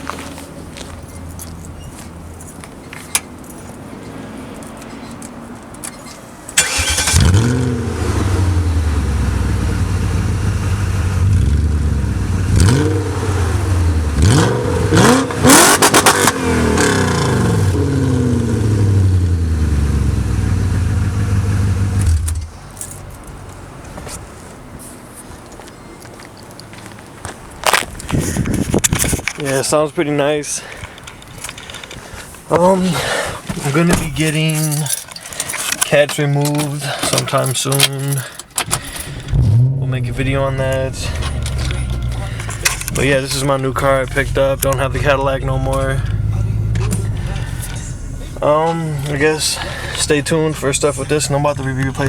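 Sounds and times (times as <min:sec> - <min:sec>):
car engine revving: 0:06.6 - 0:22.5, 0:39.0 - 0:52.0.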